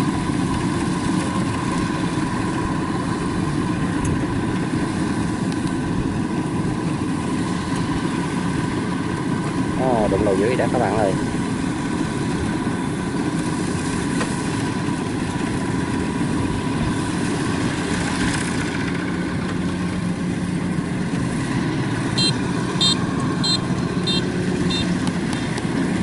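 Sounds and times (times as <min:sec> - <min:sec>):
diesel engine running under load: 0:00.0 - 0:26.0
short high electronic beeps: 0:22.2 - 0:24.9.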